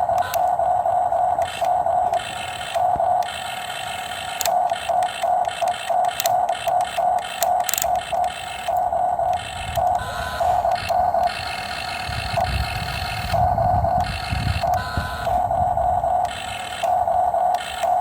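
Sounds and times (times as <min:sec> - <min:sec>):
electric motor whining: 0:00.0 - 0:18.0
low rumbling noise: 0:08.8 - 0:17.5.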